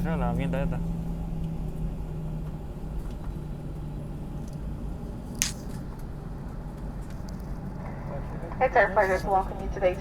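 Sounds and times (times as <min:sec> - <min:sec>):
aircraft cabin hum and rumble: 0:00.0 - 0:10.0.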